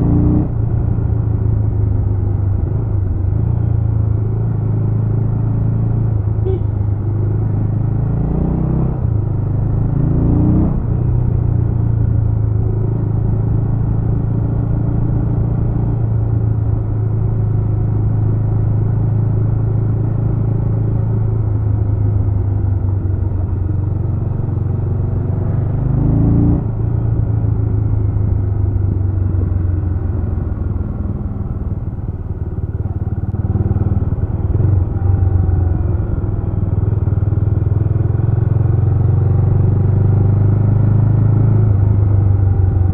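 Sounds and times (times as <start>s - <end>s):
motorcycle engine revving: 23.2s - 42.9s.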